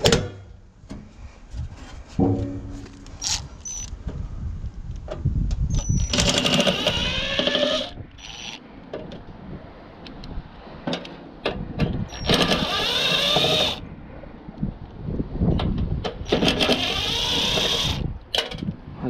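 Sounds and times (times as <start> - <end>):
cordless power driver whirring: 5.8 - 8.6, 12.1 - 13.8, 16.3 - 18.0.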